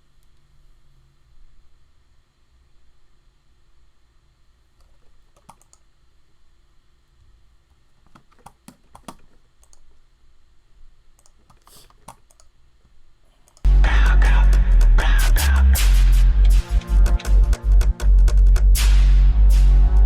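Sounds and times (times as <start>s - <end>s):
low steady hum: 0.0s - 20.0s
keyboard and mouse clicks: 4.8s - 5.9s, 8.0s - 9.9s, 11.2s - 12.6s, 13.4s - 13.7s.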